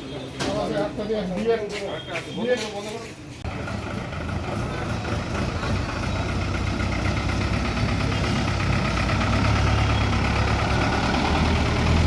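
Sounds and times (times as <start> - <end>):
vehicle engine idling: 3.5 - 12.0.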